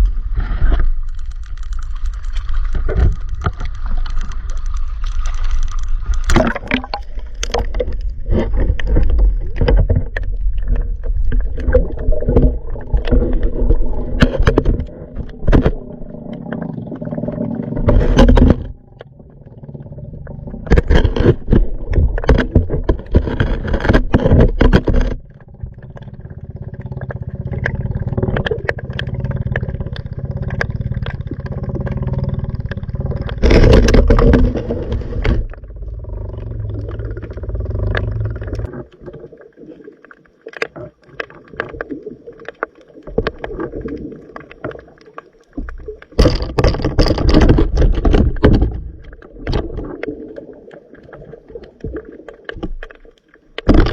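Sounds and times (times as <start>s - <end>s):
muffled underwater rushing: 0.0s - 53.9s
low rumble: 25.2s - 38.7s.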